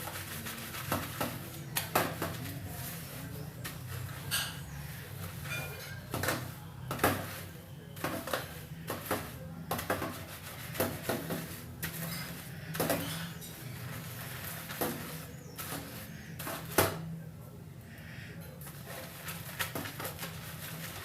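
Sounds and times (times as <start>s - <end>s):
hands rubbing wet hair: 0.0s - 4.2s, 18.9s - 21.0s.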